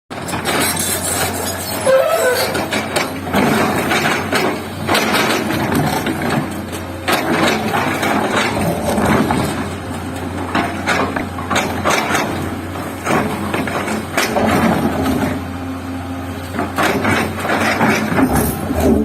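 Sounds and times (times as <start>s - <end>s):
excavator engine running: 0.1s - 19.0s
metal clanks and knocks: 0.2s - 15.4s, 16.5s - 19.0s
brief squeal: 0.8s - 2.6s.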